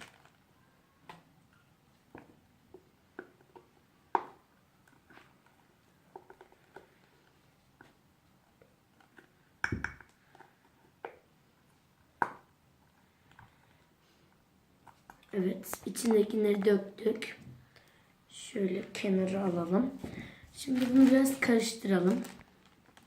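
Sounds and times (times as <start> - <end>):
plastic bottle clicks and taps: 9.6 - 10.1, 12.2 - 12.4.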